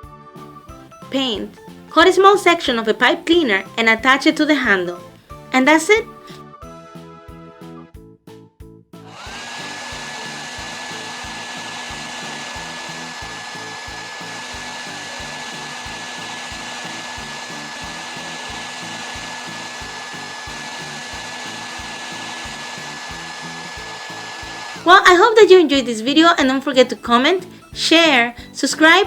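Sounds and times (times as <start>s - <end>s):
background music with beat: 0.0s - 3.9s, 4.6s - 24.9s
hair dryer blowing: 9.0s - 25.9s.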